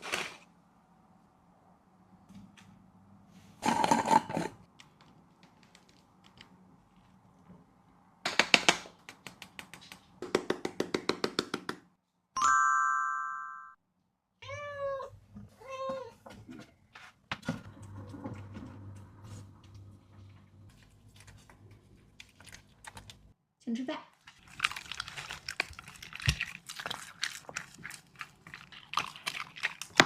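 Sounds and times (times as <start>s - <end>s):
bell-like ding: 12.4s - 13.8s
dog crunching food: 24.3s - 30.0s.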